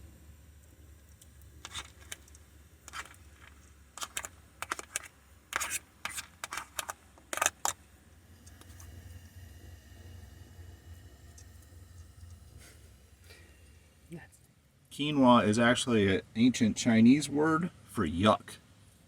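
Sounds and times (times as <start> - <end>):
utensil scraping in a pan: 1.6 - 7.8.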